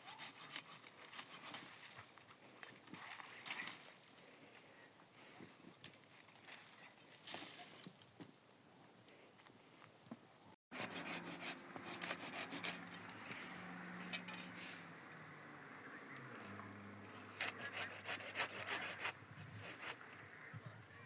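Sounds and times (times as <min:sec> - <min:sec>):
rasping strokes on wood: 0:00.0 - 0:01.6, 0:10.7 - 0:13.1, 0:17.0 - 0:20.3.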